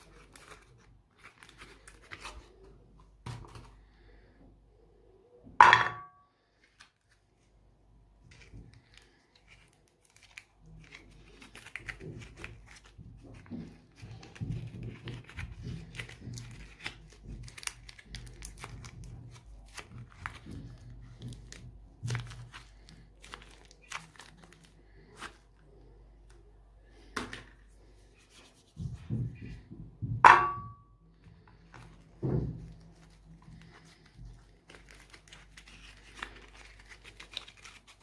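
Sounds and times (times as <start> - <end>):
crunchy crackling and cracks: 8.2 - 27.6, 31.4 - 38.0
loud knock with ringing tone: 30.2 - 30.8.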